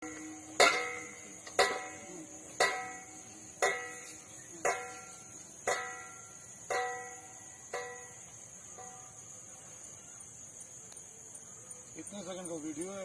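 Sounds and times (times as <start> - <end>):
ringing metallic knocking: 0.0 - 9.2.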